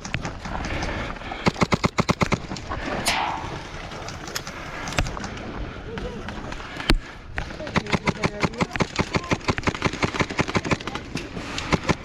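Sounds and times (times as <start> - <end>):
airsoft gun shots: 3.0 - 4.4.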